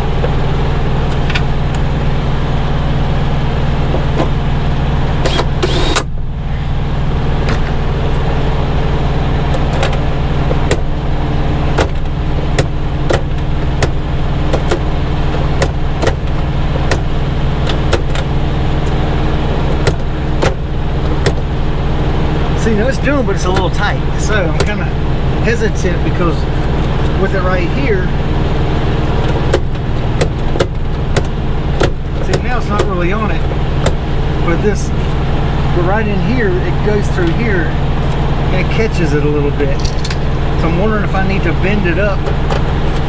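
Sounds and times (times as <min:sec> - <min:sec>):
truck engine idling: 0:00.0 - 0:43.0
short rattle: 0:39.8 - 0:40.3.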